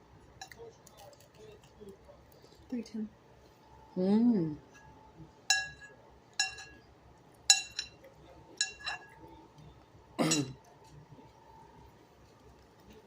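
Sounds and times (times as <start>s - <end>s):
spoon clinking on bowl: 5.5s - 6.8s, 7.5s - 9.3s.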